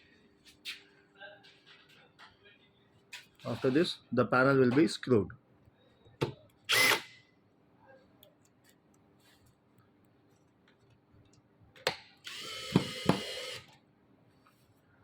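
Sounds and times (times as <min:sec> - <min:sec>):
cordless drill whirring: 0:06.7 - 0:07.1, 0:12.2 - 0:13.7.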